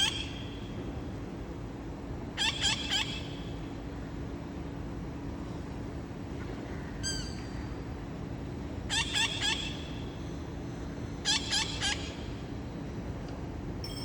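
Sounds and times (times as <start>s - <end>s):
parrots calling: 2.4s - 3.4s, 8.9s - 10.0s, 11.2s - 12.2s.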